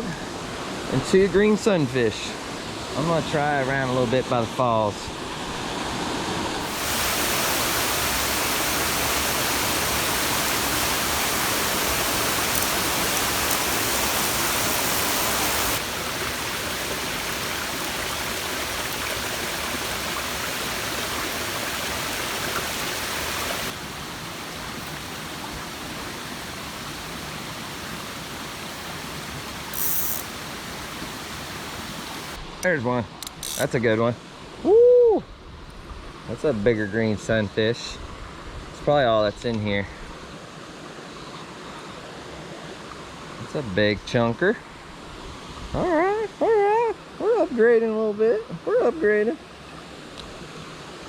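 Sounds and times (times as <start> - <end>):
waterfall rushing: 0.0 - 32.4
brief hiss: 29.6 - 32.4.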